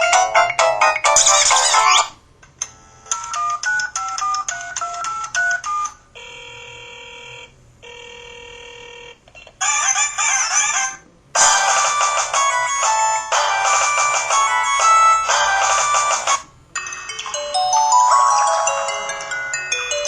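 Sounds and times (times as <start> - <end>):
electronic ringtone melody: 11.4 - 20.0.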